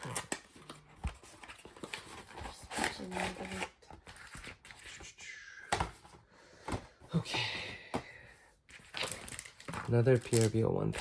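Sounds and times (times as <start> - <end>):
cardboard box torn open: 0.0 - 4.6
plastic wrap crinkling: 8.9 - 11.0.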